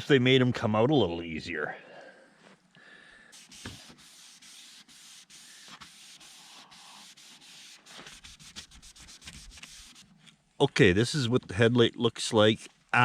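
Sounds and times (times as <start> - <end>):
sandpaper rubbing on plastic: 3.3 - 10.2.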